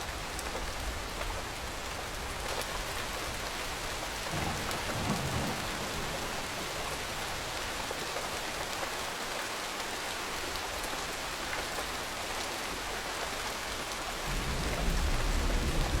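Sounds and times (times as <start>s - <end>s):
steady rain falling: 0.0s - 16.0s
thunder rumble: 14.2s - 16.0s.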